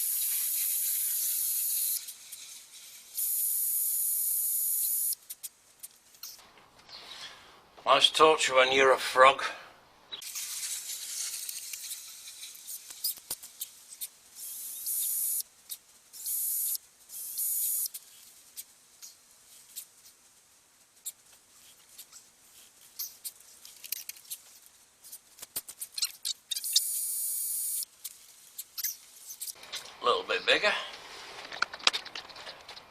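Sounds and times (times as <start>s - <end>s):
clicks and scrapes of handling: 21.0s - 26.7s, 30.9s - 32.9s.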